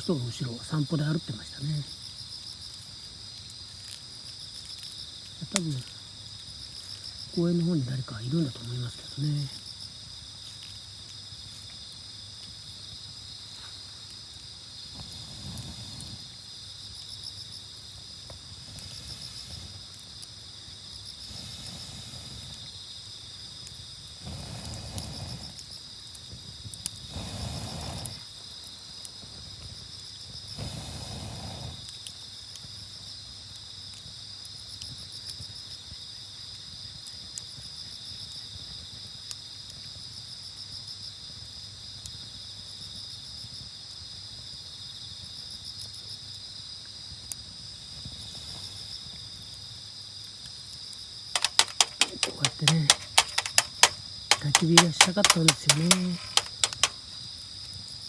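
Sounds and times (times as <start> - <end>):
night insects trilling: 0.0 - 13.5
faint clicks: 51.4 - 57.0.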